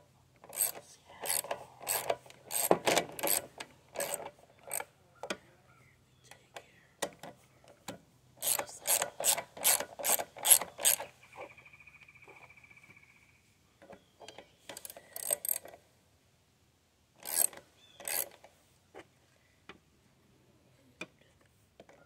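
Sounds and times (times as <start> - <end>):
socket ratchet wrench clicking: 0.4 - 4.8, 8.4 - 11.1, 14.7 - 15.8, 17.2 - 18.4.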